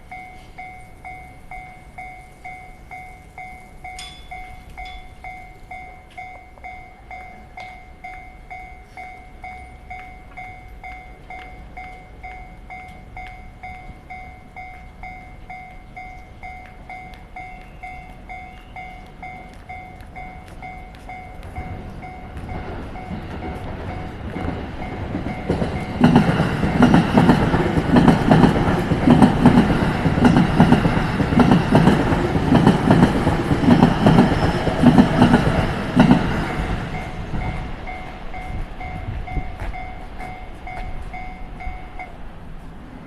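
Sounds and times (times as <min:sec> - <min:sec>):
level crossing bell ringing: 0:00.0 - 0:27.2, 0:36.6 - 0:42.2
train wheels clacking over rail joints: 0:20.6 - 0:41.2.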